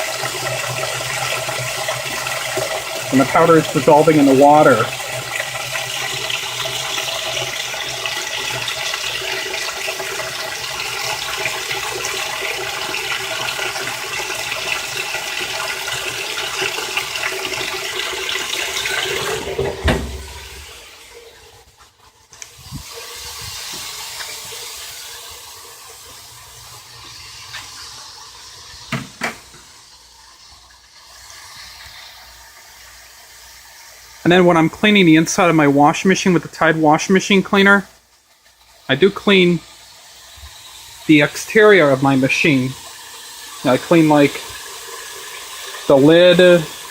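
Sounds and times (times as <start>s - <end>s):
water pouring into washer: 0.0s - 46.9s
washer thump: 19.0s - 20.8s, 28.9s - 29.7s.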